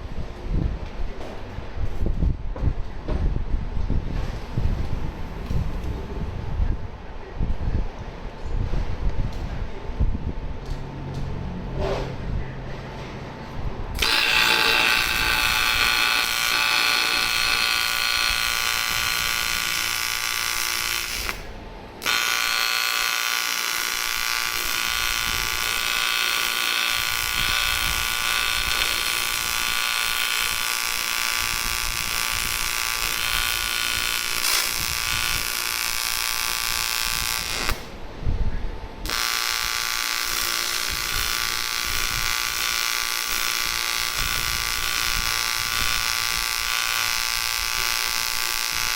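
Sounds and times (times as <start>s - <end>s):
welding arc buzzing: 13.9s - 38.0s, 39.0s - 48.9s.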